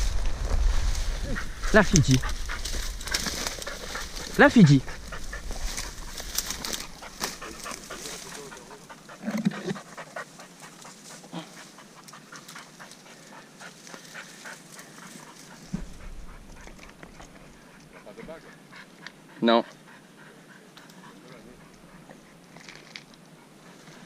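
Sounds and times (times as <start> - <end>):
dog panting: 1.1 - 22.6
faint scattered clicks: 20.7 - 21.8.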